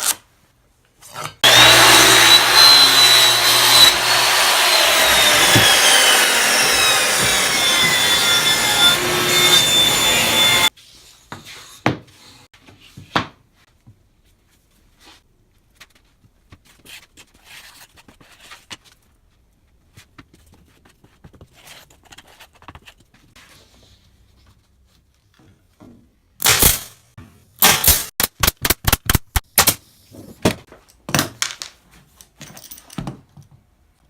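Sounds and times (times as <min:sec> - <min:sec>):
wood pieces rubbing: 0:01.4 - 0:10.7.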